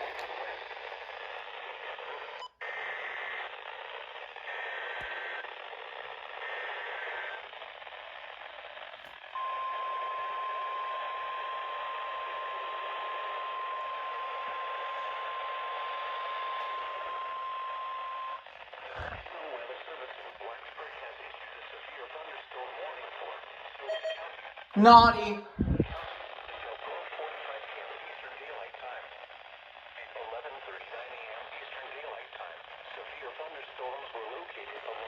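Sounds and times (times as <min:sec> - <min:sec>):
radio static: 0:00.0 - 0:35.0
steady warning alarm tone: 0:09.4 - 0:18.4.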